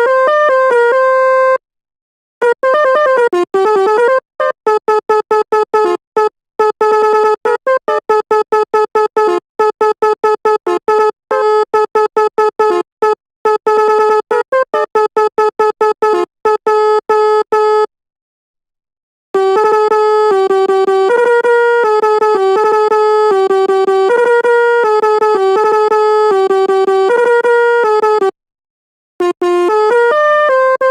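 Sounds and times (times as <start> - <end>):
stuttering bus horn blasts: 2.4 - 17.9, 19.4 - 28.4, 29.2 - 30.9.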